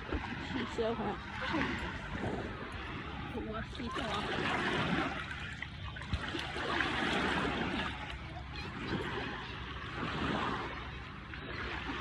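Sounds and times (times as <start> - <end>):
waves lapping on a beach: 0.0 - 12.0.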